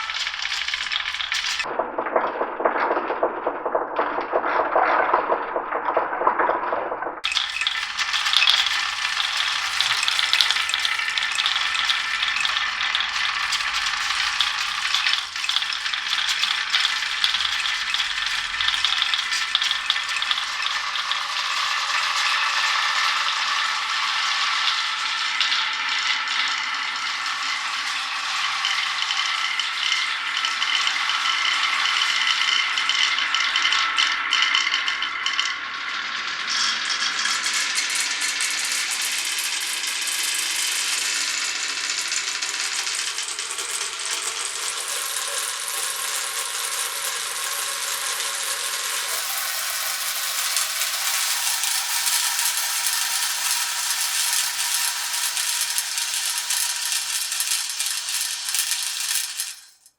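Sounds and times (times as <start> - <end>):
marbles rattling down wooden run: 0.0 - 6.1, 7.2 - 59.9.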